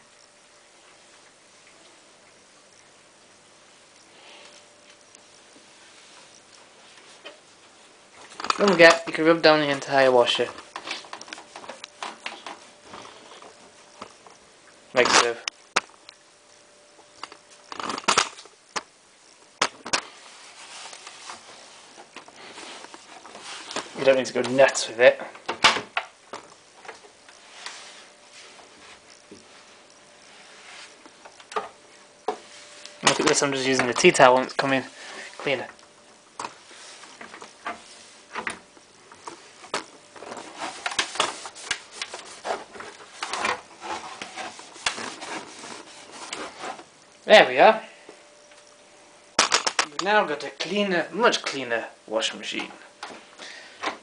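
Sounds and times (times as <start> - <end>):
towel wiping machine casing: 40.2 - 46.9.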